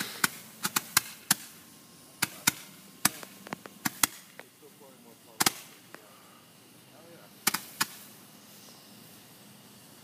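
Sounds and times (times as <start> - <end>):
fireworks bangs: 0.0 - 1.6, 2.2 - 4.5, 5.3 - 5.9, 7.4 - 8.2.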